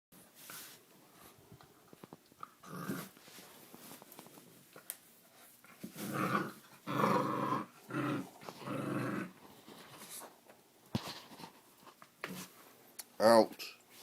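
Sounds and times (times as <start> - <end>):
puppy growling: 2.6 - 3.2, 5.9 - 9.4.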